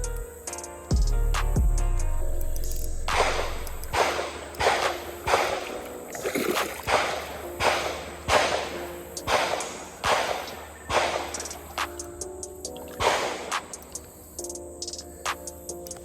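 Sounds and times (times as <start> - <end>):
beat with snare-like hits: 0.0 - 2.0, 2.6 - 5.7, 6.6 - 15.7.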